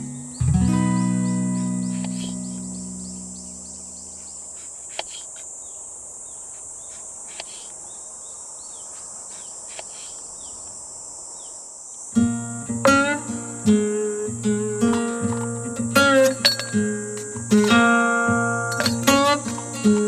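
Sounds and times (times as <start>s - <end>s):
downward-sweeping bird chirps: 0.0s - 5.2s
high-pitched insect drone: 0.0s - 5.4s, 12.2s - 20.0s
faint clicks: 7.3s - 7.8s.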